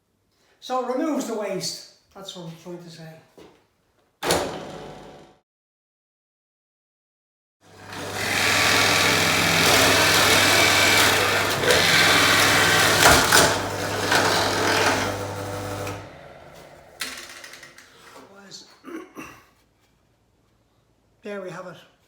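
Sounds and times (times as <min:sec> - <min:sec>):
drill press motor hum: 0:07.7 - 0:18.0
drill bit boring into wood: 0:07.9 - 0:16.2.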